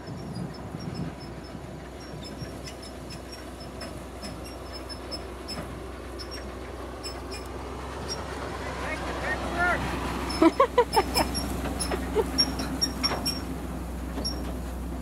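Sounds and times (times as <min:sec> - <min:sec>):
harvest machinery humming: 0:00.0 - 0:15.0
light high ticking: 0:00.2 - 0:09.6.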